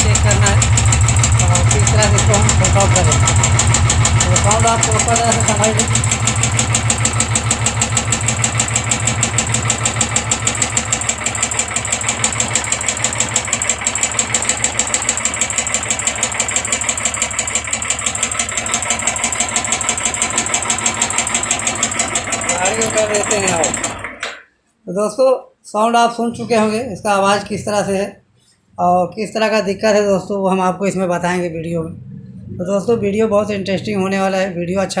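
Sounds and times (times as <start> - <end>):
motorcycle engine idling: 0.0 - 24.0
fast engine ticking: 0.0 - 24.2.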